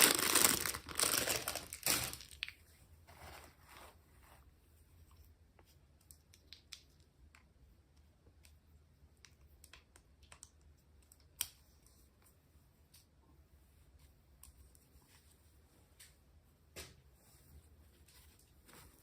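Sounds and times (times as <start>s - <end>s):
packaging being handled: 0.0s - 2.4s.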